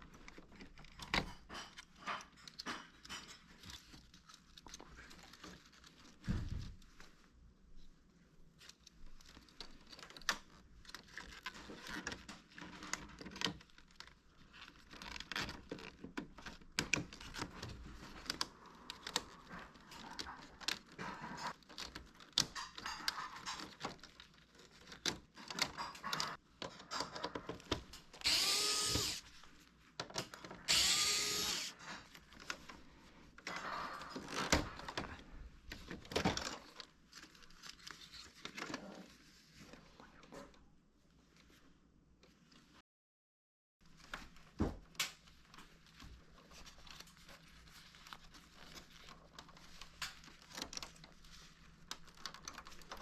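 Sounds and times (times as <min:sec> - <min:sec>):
electric screwdriver whirring: 0:28.2 - 0:29.2, 0:30.7 - 0:31.7.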